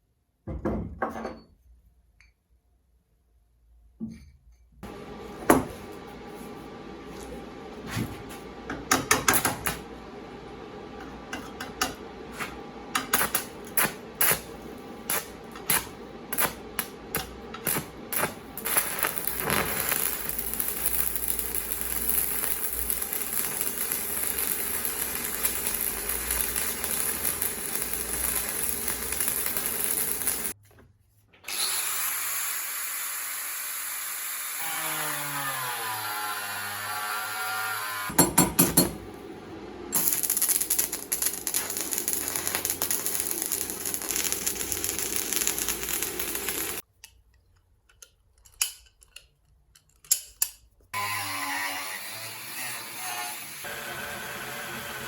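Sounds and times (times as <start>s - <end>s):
power tool running: 12.9s - 30.6s, 39.9s - 46.8s, 52.0s - 55.0s.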